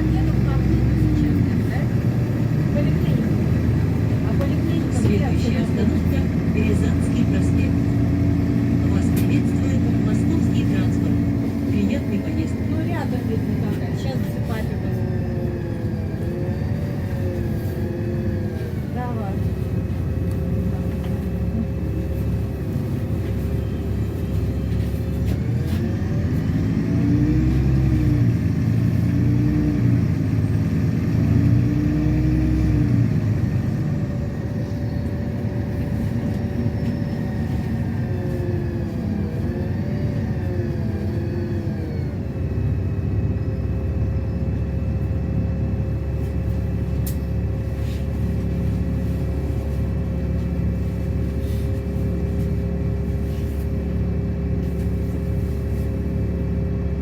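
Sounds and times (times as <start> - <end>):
bus engine drone and whine: 0.0 - 57.0.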